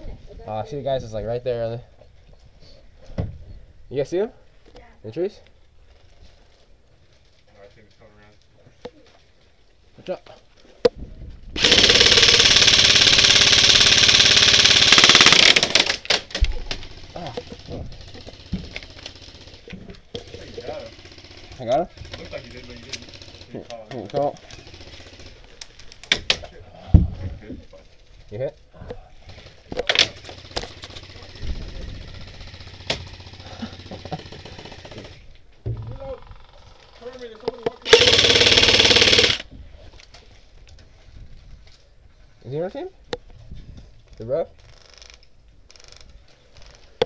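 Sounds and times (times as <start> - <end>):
gearbox whirring: 11.6 - 16.1, 37.8 - 39.5
airsoft gun firing full-auto: 11.6 - 16.3, 37.8 - 39.4
airsoft guns firing cracks: 11.6 - 23.4, 29.2 - 31.2, 37.8 - 39.5
faint rapid rattle: 16.7 - 23.8.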